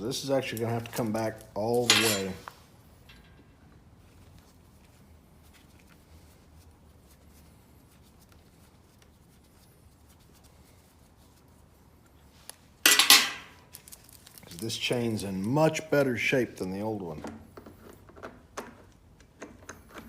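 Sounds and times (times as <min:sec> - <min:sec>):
low room hum: 0:00.0 - 0:20.0.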